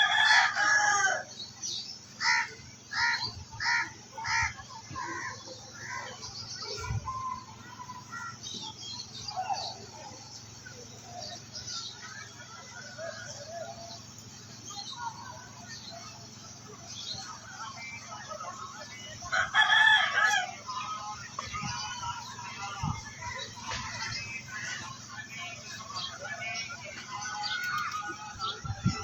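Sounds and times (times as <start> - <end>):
rooster crowing: 0.0 - 1.3, 19.3 - 20.6.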